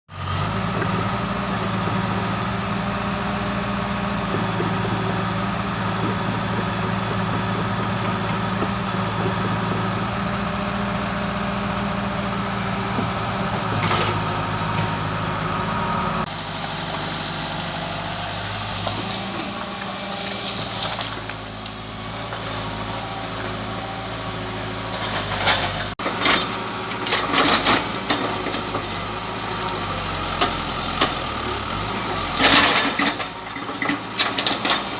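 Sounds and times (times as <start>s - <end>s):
excavator diesel engine running: 0.1s - 34.9s
wood cracking and snapping: 16.3s - 22.5s.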